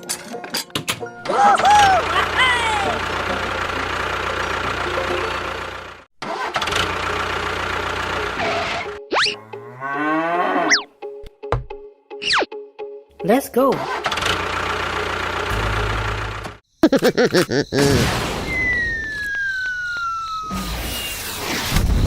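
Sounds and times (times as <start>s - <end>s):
engine humming: 1.2s - 9.6s, 13.7s - 16.6s
whistle-like glides: 18.4s - 21.8s.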